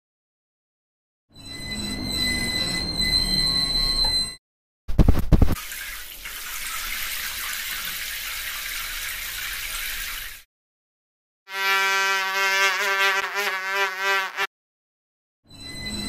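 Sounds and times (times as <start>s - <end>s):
buzzing pitched tone: 11.5s - 14.5s.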